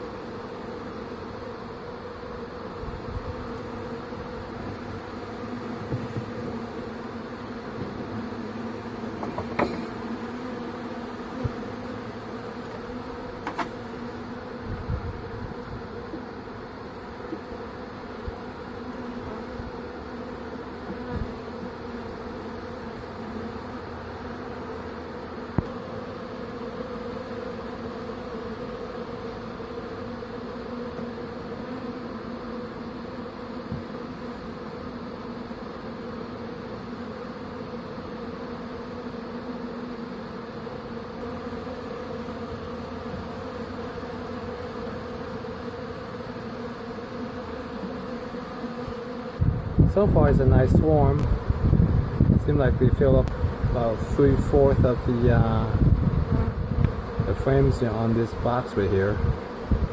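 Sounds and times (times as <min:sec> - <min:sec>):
honeybee swarm humming: 0:00.0 - 0:59.9
short knocks: 0:09.2 - 0:09.9.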